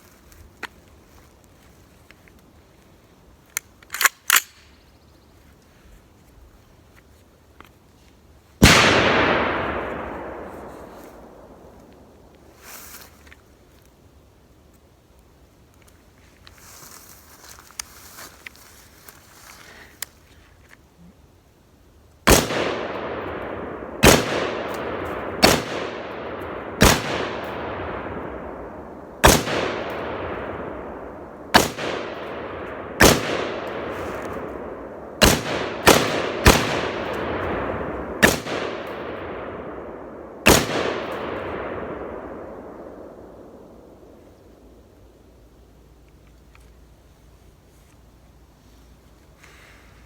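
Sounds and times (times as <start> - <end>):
gunshots with long echo: 8.6 - 12.3, 22.3 - 44.8.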